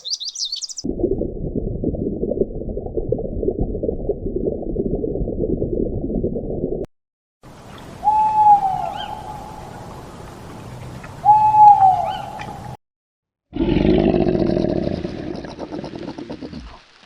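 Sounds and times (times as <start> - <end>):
loud rough animal roar: 13.5 - 16.8.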